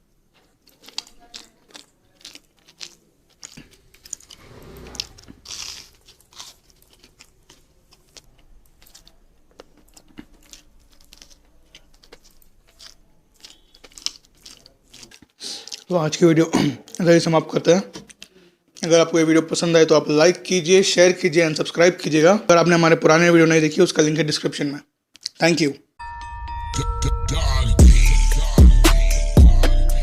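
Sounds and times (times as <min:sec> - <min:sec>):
person crunching and chewing food: 0:00.3 - 0:17.1.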